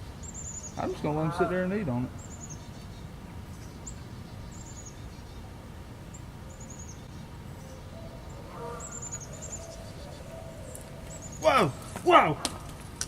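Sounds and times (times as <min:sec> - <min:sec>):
small bird chirping: 0:00.0 - 0:05.5, 0:06.1 - 0:11.9
low outdoor rumble: 0:00.0 - 0:13.0.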